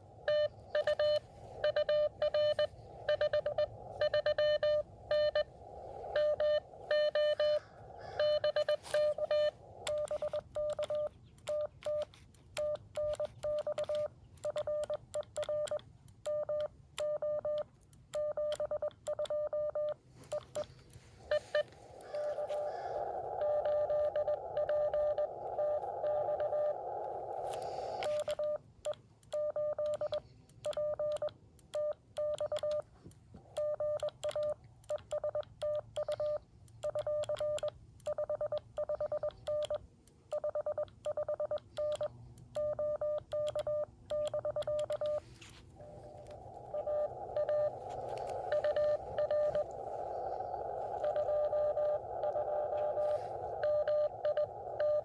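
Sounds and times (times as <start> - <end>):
receiver hiss: 0.0 - 15.7, 19.0 - 31.4, 42.6 - 55.0
morse code beeps: 0.0 - 32.9, 33.5 - 55.0.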